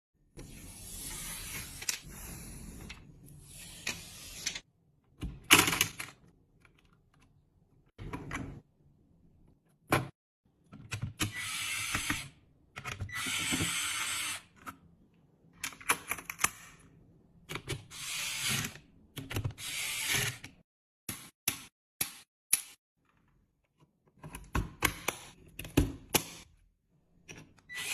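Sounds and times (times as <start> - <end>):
computer parts clicking and knocking: 5.1 - 7.2.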